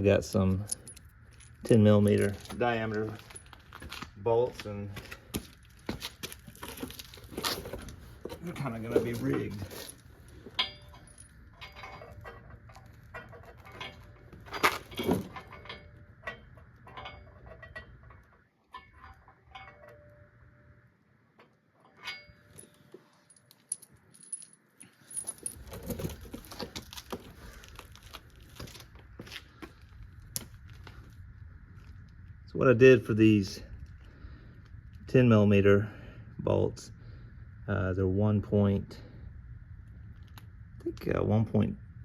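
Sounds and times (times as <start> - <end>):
small metal parts clinking: 0.6 - 4.0, 8.4 - 20.2, 21.8 - 28.8.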